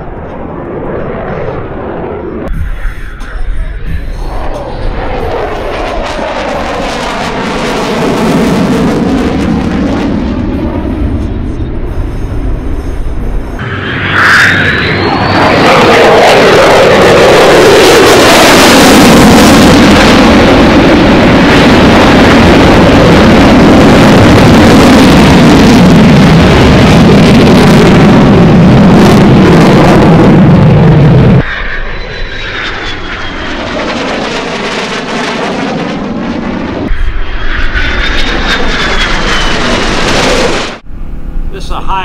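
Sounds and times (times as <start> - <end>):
jet rumble with high whine: 0.0 - 42.0
loud jet engine noise: 0.0 - 42.0.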